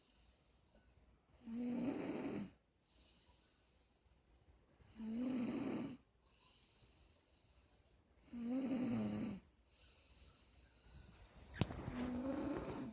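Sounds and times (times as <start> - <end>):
person snoring: 4.9 - 6.0, 8.2 - 9.4, 12.0 - 12.9.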